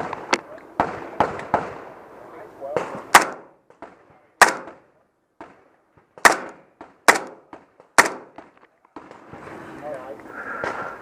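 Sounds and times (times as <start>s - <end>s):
gunshots with ringing echo: 2.8s - 3.6s, 4.4s - 4.8s, 5.4s - 8.4s.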